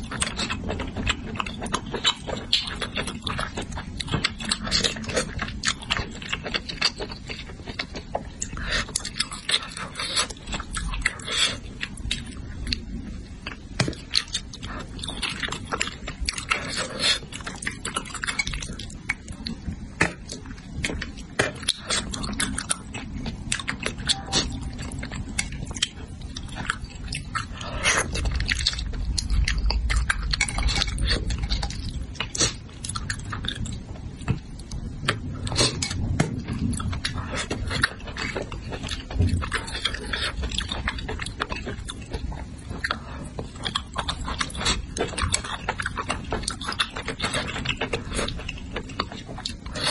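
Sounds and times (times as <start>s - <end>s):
chewing and lip-smacking: 0.0s - 49.9s
low rumble: 22.1s - 44.5s.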